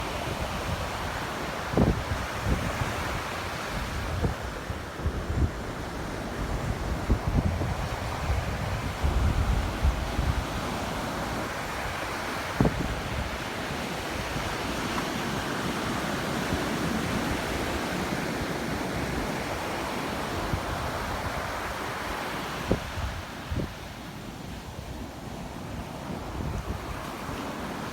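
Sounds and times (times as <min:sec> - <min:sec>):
ocean surf breaking: 0:00.0 - 0:27.9
wind buffeting microphone: 0:00.2 - 0:14.8, 0:24.6 - 0:27.8.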